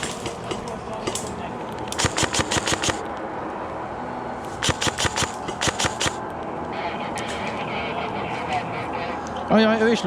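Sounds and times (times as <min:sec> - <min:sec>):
airsoft gun bursts: 0:01.9 - 0:03.0, 0:04.6 - 0:06.2.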